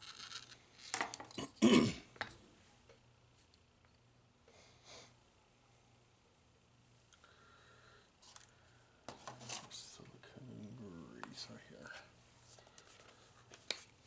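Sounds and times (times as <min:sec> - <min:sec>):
faint low hum: 0:00.0 - 0:14.0
person clearing throat: 0:01.4 - 0:02.1.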